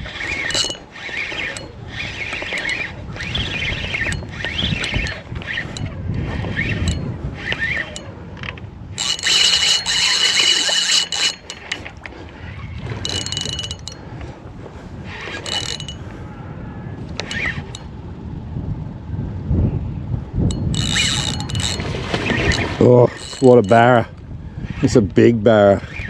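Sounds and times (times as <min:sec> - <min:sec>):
fishing reel drag buzzing: 0:00.0 - 0:14.2, 0:15.0 - 0:16.2, 0:17.2 - 0:17.9, 0:20.5 - 0:25.0.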